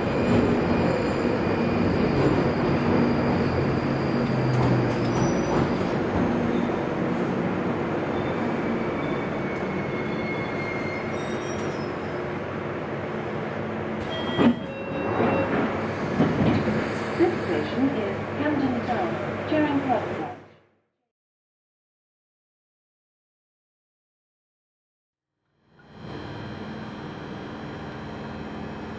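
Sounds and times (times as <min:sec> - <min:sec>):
train rumbling in tunnel: 0:00.0 - 0:20.7.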